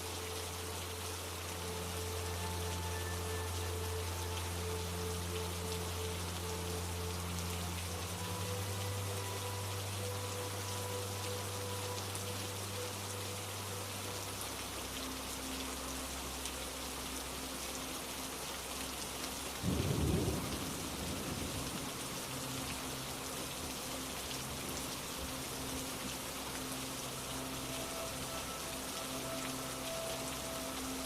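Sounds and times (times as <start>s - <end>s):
heavy rain falling: 0.0s - 31.0s
low rumble of thunder: 19.6s - 22.8s.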